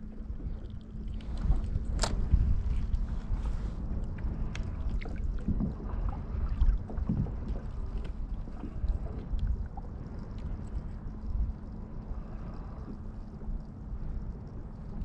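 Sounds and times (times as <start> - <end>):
wind buffeting microphone: 0.0 - 11.6
water lapping against hull: 0.0 - 15.0.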